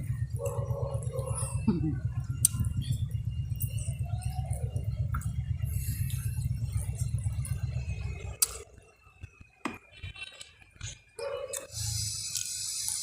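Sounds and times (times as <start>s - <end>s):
low rumble: 0.0s - 8.7s.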